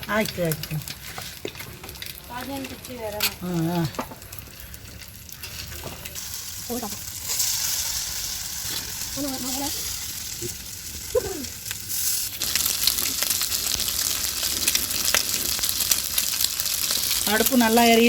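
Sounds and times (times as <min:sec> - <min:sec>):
fish sizzling in oil: 0:00.0 - 0:18.0.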